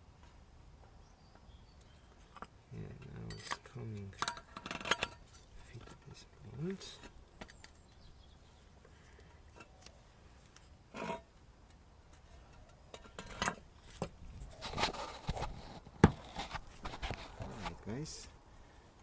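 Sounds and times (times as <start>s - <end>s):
metal parts clinking and knocking: 3.2s - 6.0s
metal scraping: 10.9s - 11.3s.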